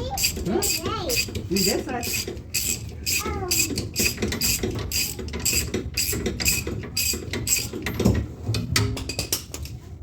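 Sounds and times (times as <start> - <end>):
ratchet wrench clicking: 0.2 - 7.8.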